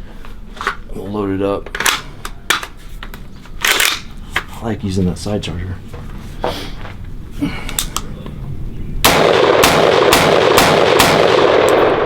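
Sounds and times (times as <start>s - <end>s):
rifle firing semi-automatic: 9.1s - 12.0s.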